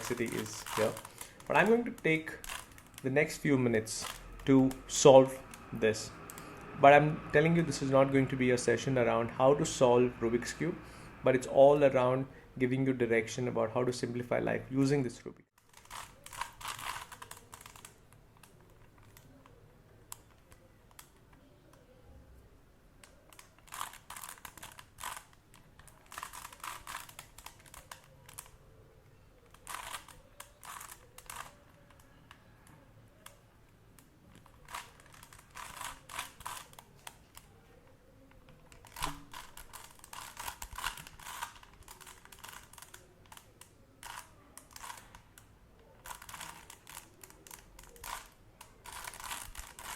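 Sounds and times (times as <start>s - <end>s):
puzzle cube plastic clicks: 0.0s - 3.4s, 15.6s - 21.9s, 23.0s - 28.6s, 29.4s - 37.6s, 38.2s - 49.9s.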